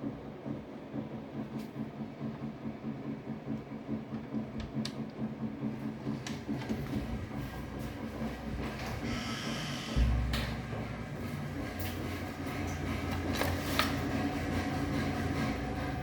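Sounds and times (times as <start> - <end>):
pulsing mechanical rumble: 0.0 - 16.0
hiss: 9.0 - 10.1.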